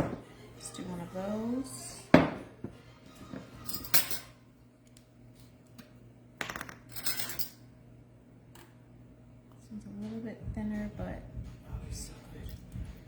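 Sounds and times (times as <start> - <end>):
metallic clinks of kitchen utensils: 3.6 - 4.3.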